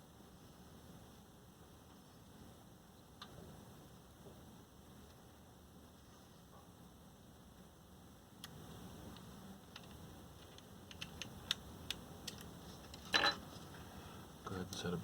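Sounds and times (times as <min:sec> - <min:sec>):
hard drive parts clicking: 0:09.7 - 0:13.0.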